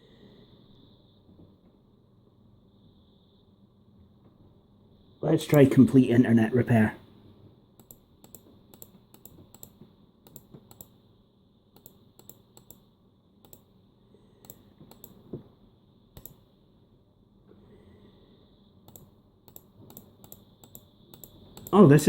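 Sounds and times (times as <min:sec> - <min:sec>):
laptop keyboard typing: 0:07.8 - 0:11.0, 0:11.8 - 0:12.8, 0:18.9 - 0:21.8.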